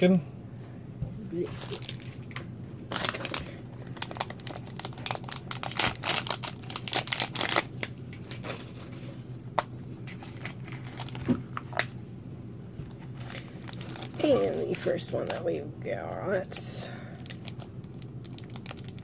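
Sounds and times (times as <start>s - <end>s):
plastic packaging crinkling and tearing: 1.4s - 11.9s, 12.9s - 15.4s, 17.2s - 19.0s.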